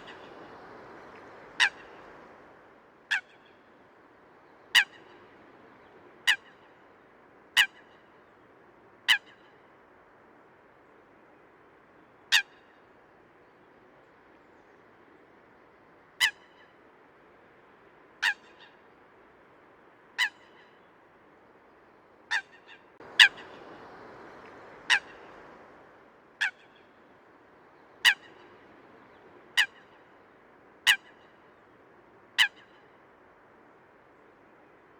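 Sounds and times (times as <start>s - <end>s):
coot honking calls: 22.3s - 25.8s.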